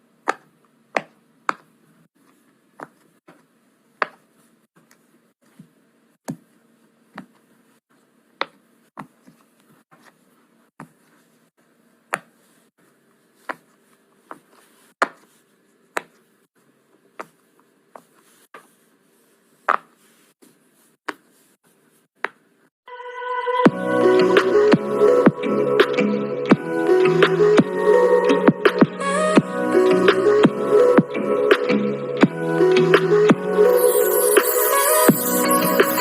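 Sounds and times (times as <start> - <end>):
music: 22.9 - 36.0.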